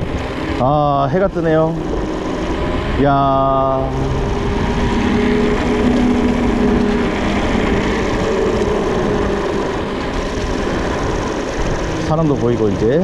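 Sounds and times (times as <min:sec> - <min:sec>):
bike tyres rolling on asphalt: 0:00.0 - 0:13.0
wind on microphone: 0:00.0 - 0:13.0.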